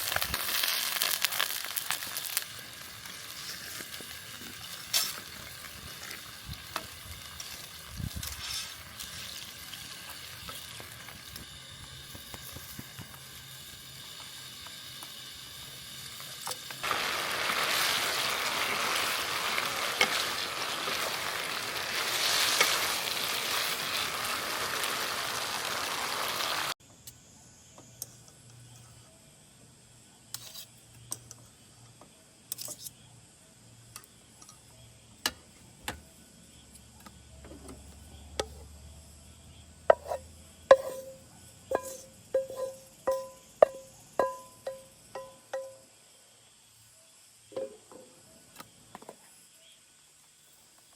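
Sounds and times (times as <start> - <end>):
food sizzling in a pan: 0.0 - 26.8, 39.9 - 46.1.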